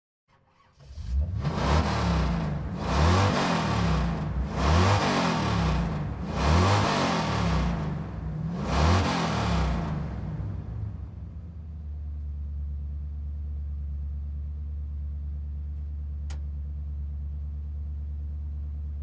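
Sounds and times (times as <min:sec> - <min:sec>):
car engine revving: 0:00.8 - 0:11.5.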